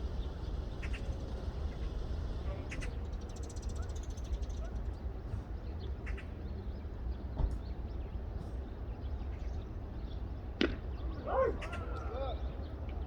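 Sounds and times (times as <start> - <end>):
wind rumbling on microphone: 0.0 - 8.8.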